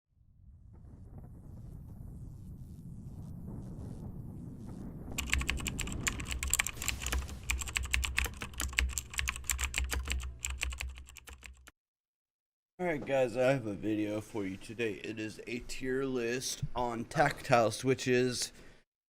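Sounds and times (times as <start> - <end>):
mechanical keyboard typing: 5.2 - 11.7.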